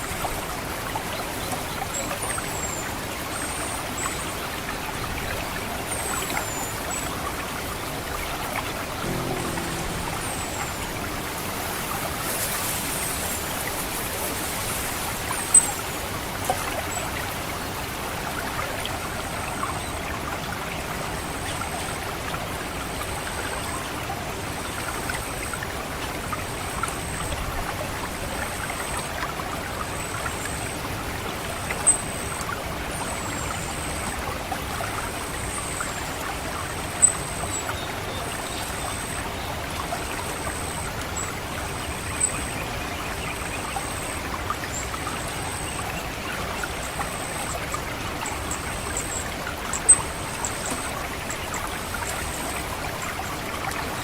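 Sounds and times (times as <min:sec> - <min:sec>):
water trickling: 0:09.0 - 0:16.1.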